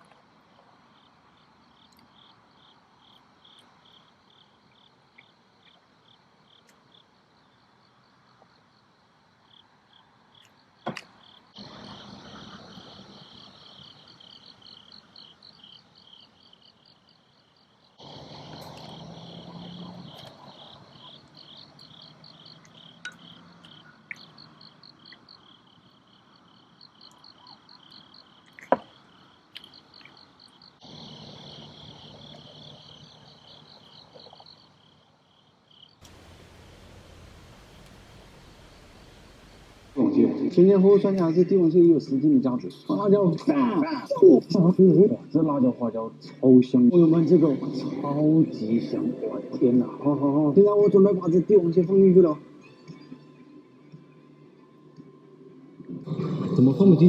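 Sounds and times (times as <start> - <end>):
crickets chirping: 0.0 - 55.8
steady rushing noise: 36.0 - 40.1.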